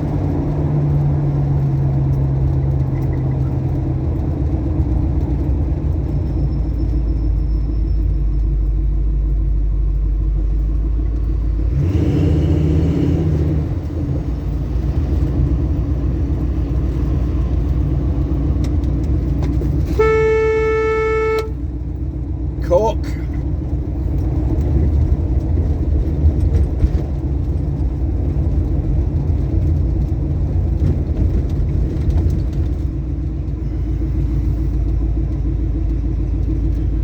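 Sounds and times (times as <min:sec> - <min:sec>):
car engine and road noise: 0:00.0 - 0:37.0
car horn: 0:19.8 - 0:21.7.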